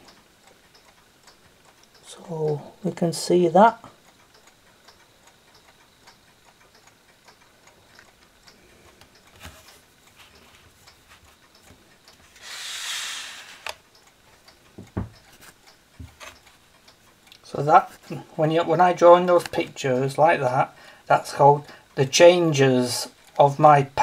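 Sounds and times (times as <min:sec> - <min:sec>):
rustling hiss: 0:00.0 - 0:23.7
mechanical clock ticking: 0:00.0 - 0:24.0
dull thump: 0:14.8 - 0:15.2.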